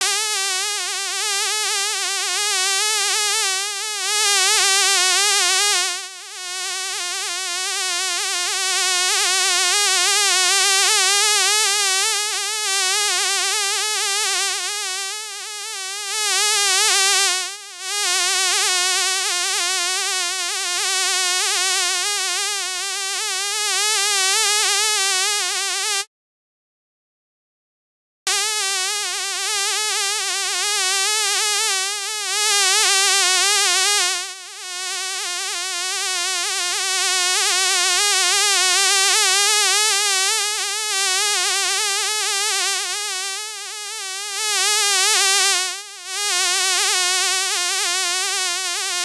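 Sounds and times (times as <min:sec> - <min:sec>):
fly buzzing: 0:20.5 - 0:26.1, 0:28.3 - 0:37.6.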